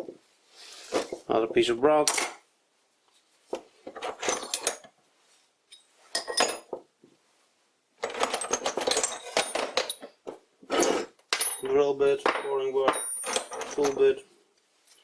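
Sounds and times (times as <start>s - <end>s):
metal tools clinking and rattling: 3.9s - 4.9s, 5.7s - 6.8s, 8.0s - 14.2s.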